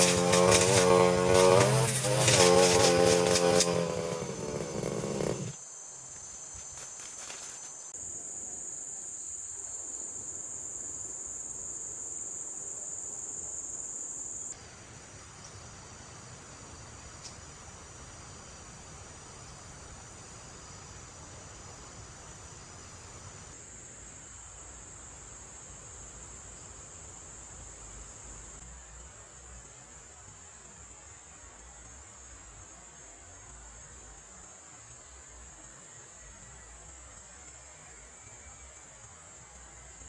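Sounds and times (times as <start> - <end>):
brush cutter engine: 0.0 - 5.6
insects chirring: 0.0 - 40.0.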